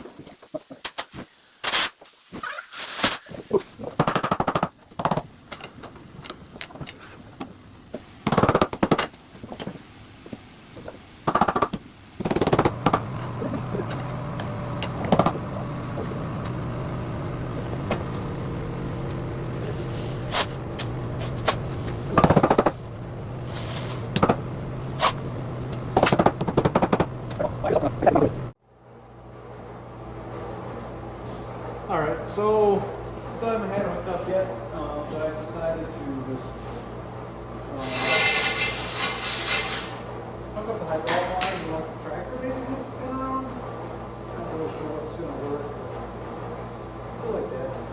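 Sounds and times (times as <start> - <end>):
low machine hum: 12.0 - 37.8.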